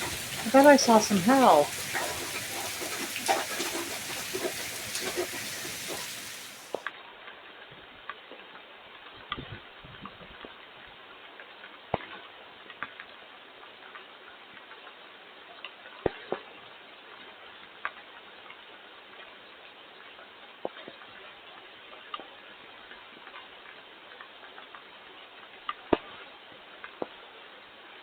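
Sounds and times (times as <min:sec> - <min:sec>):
rain hiss: 0:00.0 - 0:06.9.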